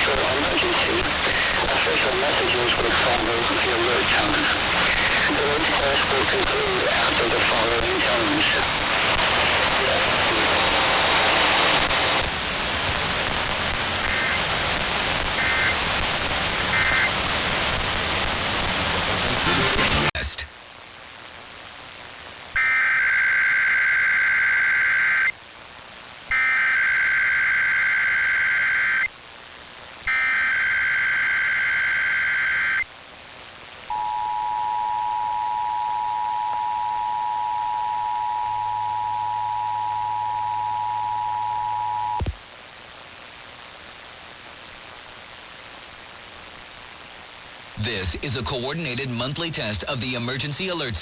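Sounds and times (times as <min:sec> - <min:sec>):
faint hiss: 0:00.0 - 0:40.8, 0:41.5 - 0:51.0
loud buzzing data bursts: 0:13.0 - 0:20.3, 0:22.4 - 0:25.4, 0:26.2 - 0:29.2, 0:30.0 - 0:32.9
two-tone attention signal: 0:33.9 - 0:42.2.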